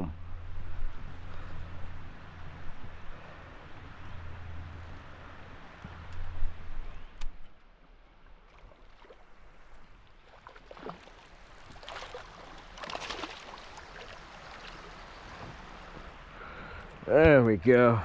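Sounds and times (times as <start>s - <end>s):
water splashing around kayak: 7.8s - 17.1s.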